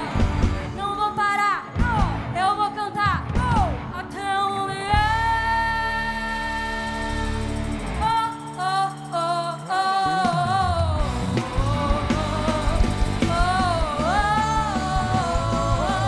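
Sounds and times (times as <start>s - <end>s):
gospel singing: 0.0s - 1.6s, 4.2s - 16.0s
band with steady beat: 9.5s - 16.0s.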